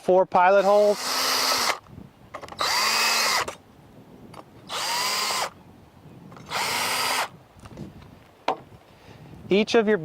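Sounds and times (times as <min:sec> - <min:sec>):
electric drill whining: 0:00.6 - 0:03.6, 0:04.6 - 0:05.6, 0:06.4 - 0:07.3.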